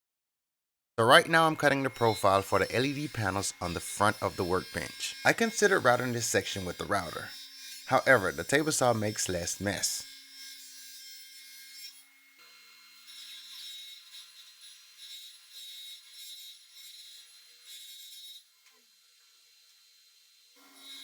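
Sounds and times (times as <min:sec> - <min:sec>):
wood scraping and rasping: 0:01.0 - 0:11.8.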